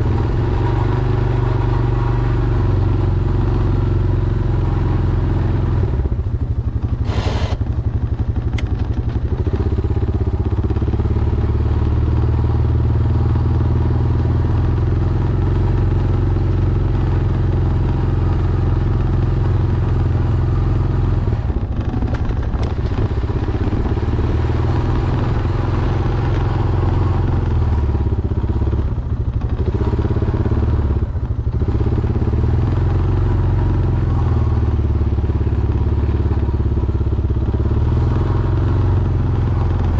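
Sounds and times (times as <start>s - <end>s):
atv engine running under load: 0.0s - 39.9s
short hiss: 7.0s - 7.7s.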